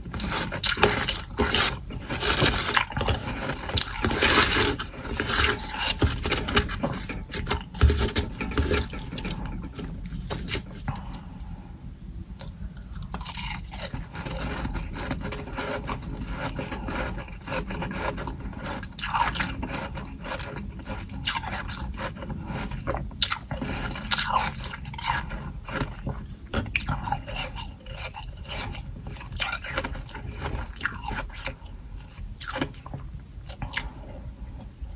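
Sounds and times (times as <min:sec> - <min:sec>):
scraping frost from tray: 0:00.0 - 0:11.2
frost being chewed: 0:00.0 - 0:11.3, 0:12.4 - 0:34.9.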